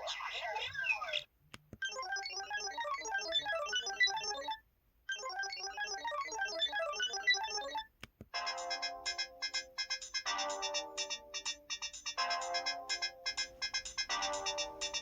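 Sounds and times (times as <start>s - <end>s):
rapid electronic chirps: 1.8s - 7.8s, 8.4s - 15.0s
rhythmic beeping ringtone: 1.8s - 15.0s.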